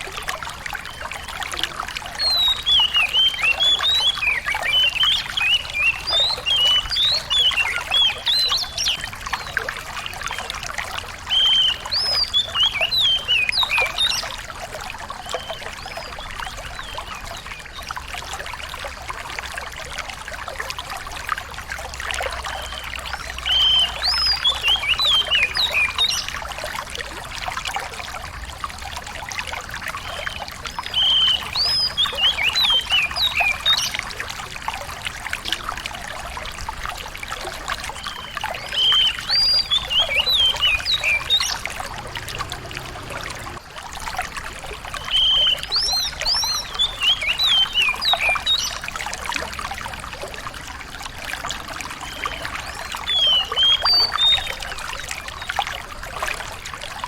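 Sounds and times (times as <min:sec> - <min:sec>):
running water trickling: 0:00.0 - 0:57.0
songbird whistling: 0:02.2 - 0:09.5, 0:11.3 - 0:14.3, 0:22.5 - 0:26.3, 0:30.0 - 0:34.0, 0:38.0 - 0:43.6, 0:45.0 - 0:48.8, 0:52.0 - 0:54.6.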